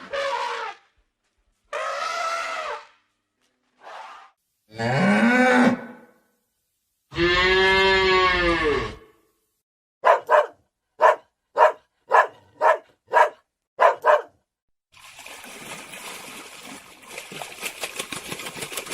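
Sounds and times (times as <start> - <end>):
dog barking: 10.0 - 14.4.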